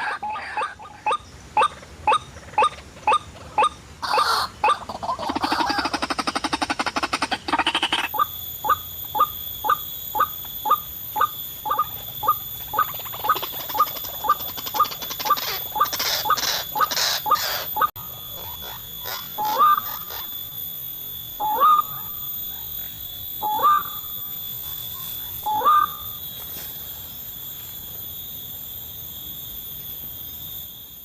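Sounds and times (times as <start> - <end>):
waterhen calling: 0.0 - 6.6, 7.5 - 20.4, 21.4 - 22.2, 23.4 - 24.1, 25.4 - 26.1
steady high whine: 0.0 - 31.0
rattling bird chatter: 4.1 - 20.4.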